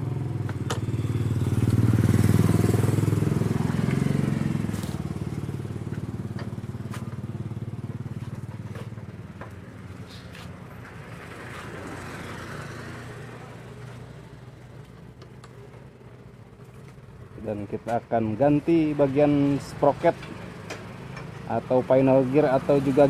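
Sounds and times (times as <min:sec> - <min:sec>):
motorcycle engine running: 0:00.0 - 0:10.0.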